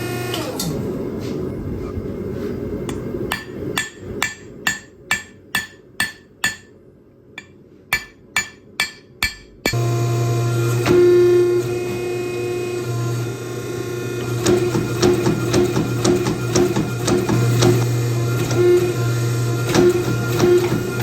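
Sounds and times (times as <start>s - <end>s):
hammer ringing on anvil: 3.3s - 6.8s, 7.4s - 10.0s.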